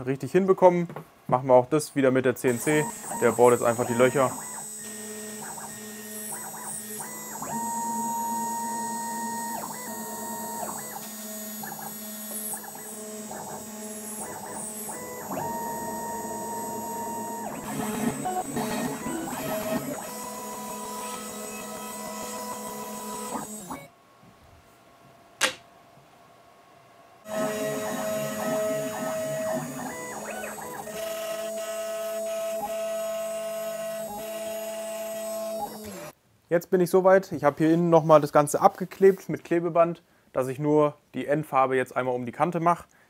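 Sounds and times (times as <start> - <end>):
stepper motors whining: 2.5 - 23.9, 27.3 - 36.1.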